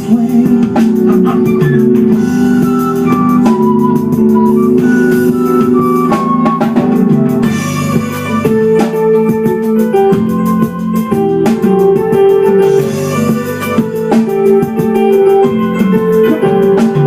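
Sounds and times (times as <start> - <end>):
steady drum beat: 0.0 - 17.0
sustained keyboard chords: 0.0 - 17.0.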